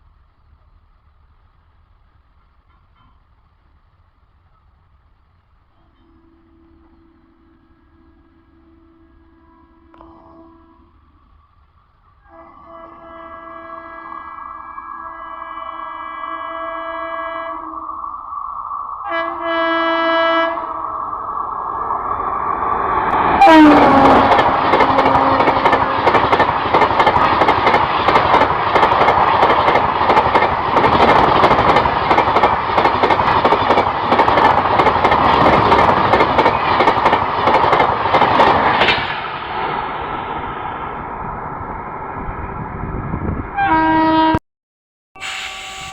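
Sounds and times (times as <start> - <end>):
train passing at speed: 0.0 - 44.3, 45.2 - 45.9
wheels clicking over rail joints: 0.5 - 6.1, 23.1 - 39.3
train horn: 5.8 - 11.2, 12.2 - 18.0, 19.0 - 20.9, 23.3 - 26.4, 43.5 - 44.4, 45.2 - 45.9.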